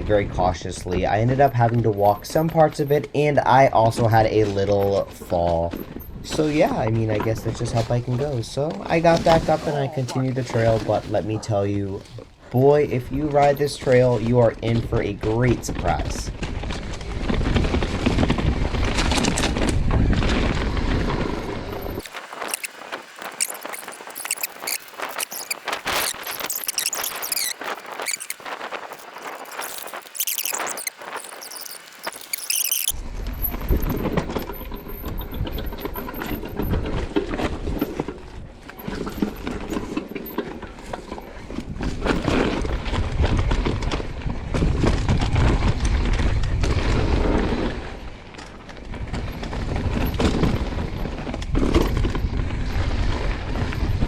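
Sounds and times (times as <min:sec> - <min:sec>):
disc brakes squealing: 0:00.9 - 0:07.8, 0:21.7 - 0:41.5
bike rattling over rocks: 0:16.3 - 0:54.0.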